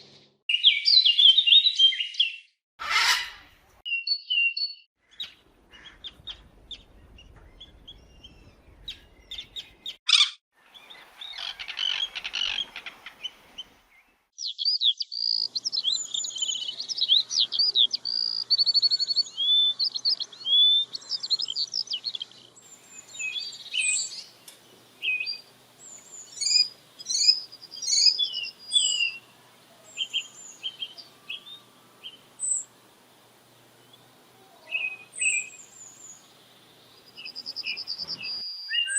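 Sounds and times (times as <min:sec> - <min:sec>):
high bird calls: 0:00.5 - 0:13.6, 0:14.4 - 0:32.7
fast trilled songbird song: 0:14.4 - 0:24.3, 0:25.0 - 0:29.2.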